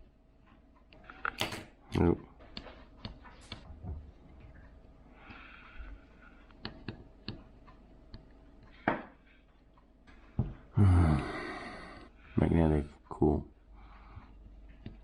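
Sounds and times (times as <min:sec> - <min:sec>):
loud breathy vocal sound: 0:10.8 - 0:12.1
breathy hiss: 0:10.8 - 0:12.2.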